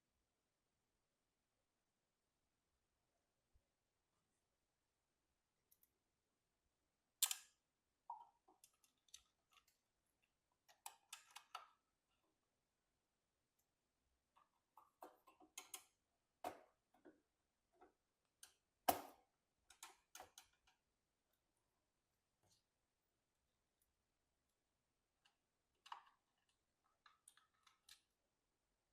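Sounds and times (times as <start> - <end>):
screwdriver and screws clicking on metal: 10.6 - 11.7, 15.0 - 16.6, 19.7 - 20.8.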